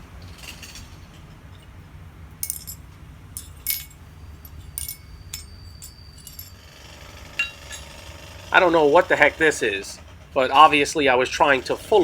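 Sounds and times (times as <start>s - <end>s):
metal tools clinking: 2.4s - 6.6s, 7.4s - 8.0s.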